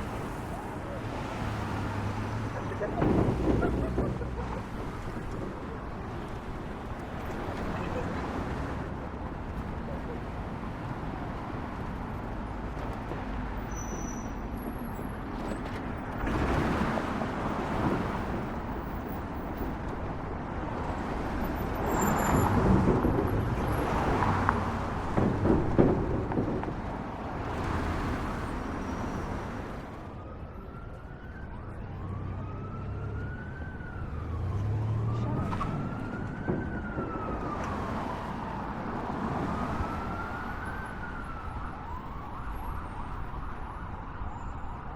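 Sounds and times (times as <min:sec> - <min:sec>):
road traffic noise: 0:00.0 - 0:44.9
vehicles passing: 0:00.0 - 0:44.9
emergency siren wailing: 0:16.7 - 0:44.9.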